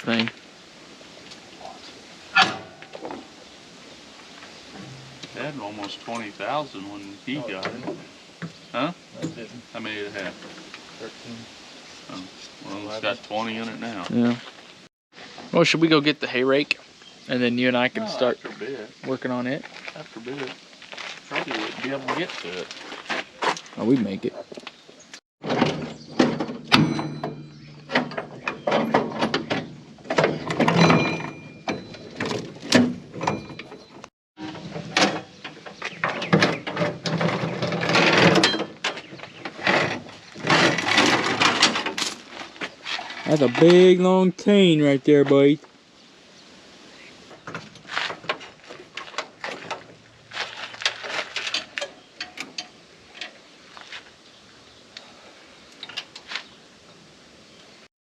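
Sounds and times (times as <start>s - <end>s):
metal clanking and knocking: 2.4s - 3.3s, 4.7s - 6.4s, 25.4s - 42.2s.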